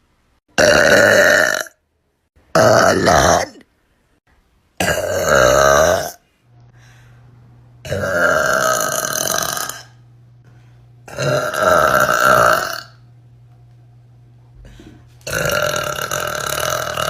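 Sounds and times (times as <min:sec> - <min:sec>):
person burping: 0:00.5 - 0:01.8, 0:02.5 - 0:03.7, 0:04.8 - 0:06.2, 0:07.8 - 0:10.0, 0:11.1 - 0:13.0, 0:15.2 - 0:17.0
low steady hum: 0:03.6 - 0:17.0.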